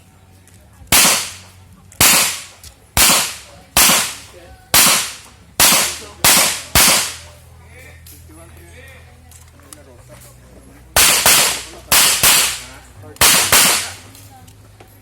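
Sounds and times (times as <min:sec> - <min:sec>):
revolver shots echoing: 0:01.0 - 0:07.3, 0:11.0 - 0:14.0.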